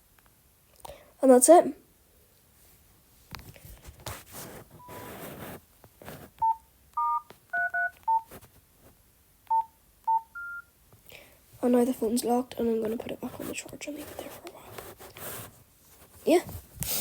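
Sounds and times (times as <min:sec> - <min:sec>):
rustling handling noise: 0:02.6 - 0:06.6, 0:07.3 - 0:09.0, 0:11.6 - 0:17.0
phone keypad beeps: 0:04.8 - 0:05.2, 0:06.4 - 0:08.3, 0:09.5 - 0:10.7.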